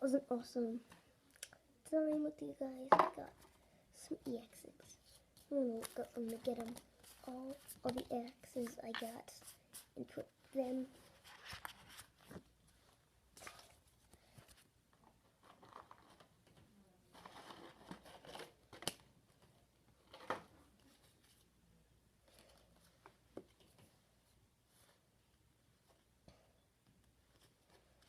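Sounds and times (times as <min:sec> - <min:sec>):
trading cards rustling and clicking: 0:05.3 - 0:09.9.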